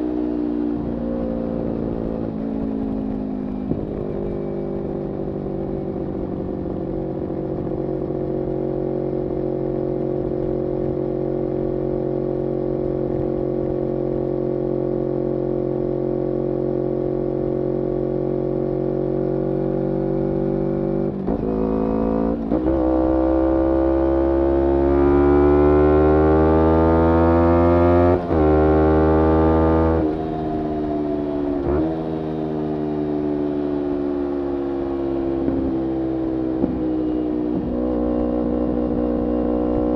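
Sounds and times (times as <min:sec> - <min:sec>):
motorcycle engine revving: 0:18.4 - 0:39.9.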